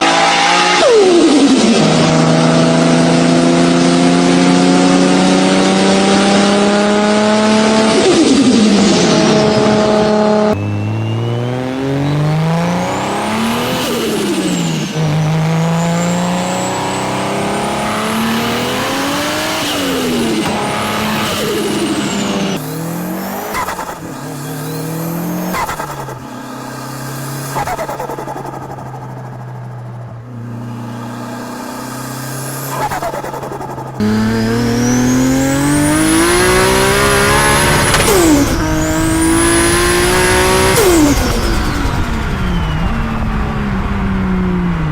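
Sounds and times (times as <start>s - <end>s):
car engines revving: 0.0s - 44.9s
turbo whistles: 10.4s - 17.1s, 18.3s - 30.4s, 31.8s - 43.8s.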